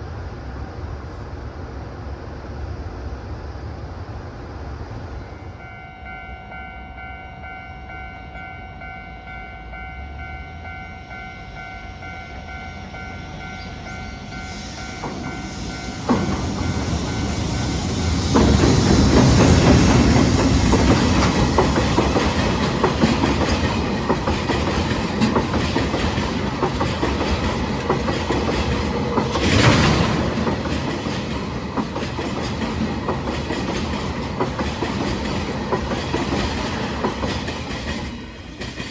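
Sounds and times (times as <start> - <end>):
electric train whine: 0.0 - 38.9
wheel and rail noise rushing: 4.1 - 38.9
wheels clacking over rail joints: 15.0 - 38.9.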